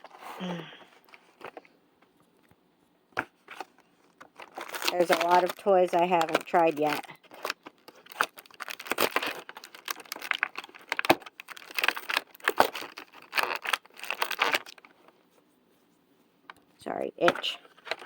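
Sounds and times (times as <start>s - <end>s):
packaging crinkling: 3.4s - 15.1s.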